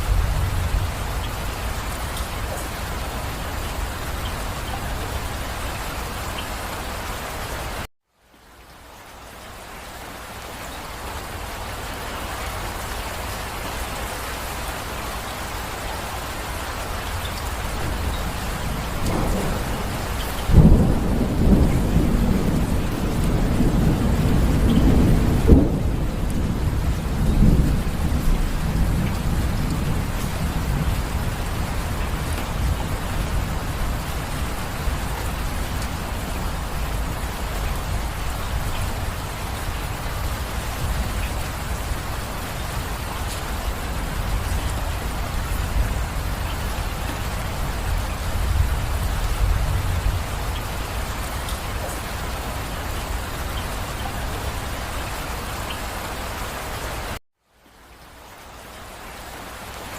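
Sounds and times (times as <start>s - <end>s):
thunder rumbling: 0.0s - 6.3s, 17.2s - 55.0s
rain falling: 0.0s - 59.9s.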